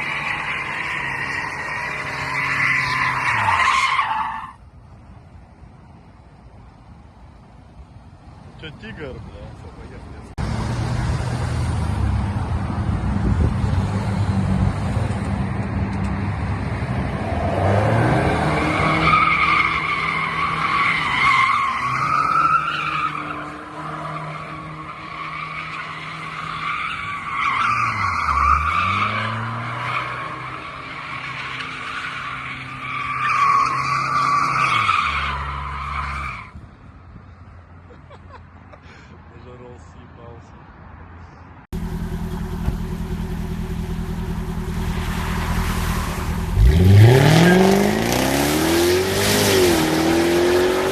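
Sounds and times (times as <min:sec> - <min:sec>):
car engine running hard: 0:41.8 - 0:48.7.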